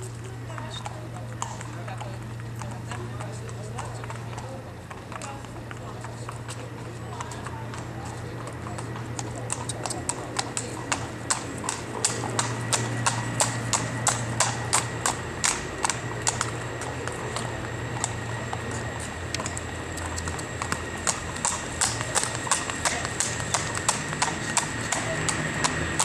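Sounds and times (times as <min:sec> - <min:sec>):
horse hooves striking ground: 0:00.0 - 0:26.0.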